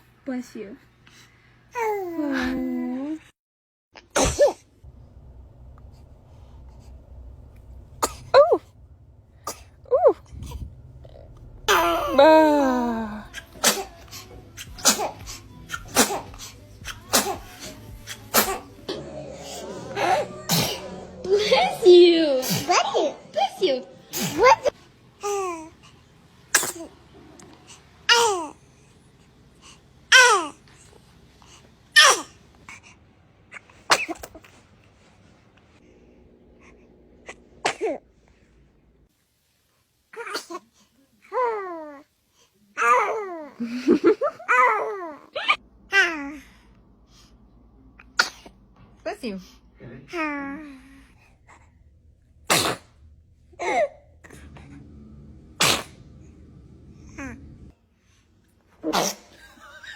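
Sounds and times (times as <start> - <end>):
baby sneezing: 4.0 - 4.6, 8.0 - 8.6, 13.0 - 18.8, 20.5 - 21.0, 22.4 - 23.0, 24.1 - 25.7, 26.5 - 26.9, 28.1 - 28.6, 30.1 - 30.6, 32.0 - 32.4, 33.5 - 34.6, 37.6 - 38.0, 40.2 - 40.7, 48.1 - 48.5, 52.5 - 53.0, 55.6 - 56.0, 58.8 - 59.4.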